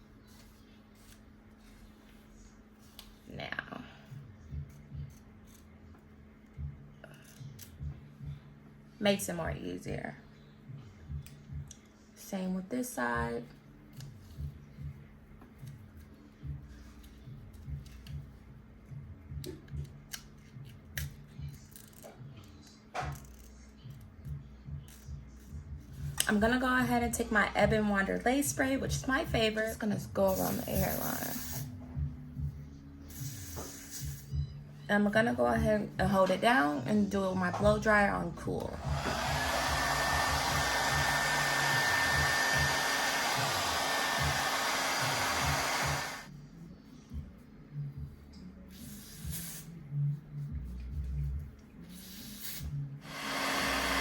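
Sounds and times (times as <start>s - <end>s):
soft low repeating beat: 4.1s - 9.6s, 10.2s - 12.2s, 13.1s - 20.1s, 31.7s - 33.5s, 38.7s - 48.8s
hair dryer running: 38.7s - 46.3s, 53.0s - 54.0s.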